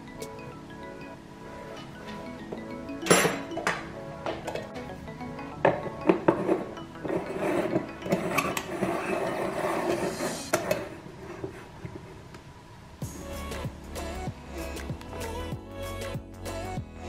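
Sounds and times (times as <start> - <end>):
kitchenware clattering: 1.7 - 5.0, 5.6 - 10.9.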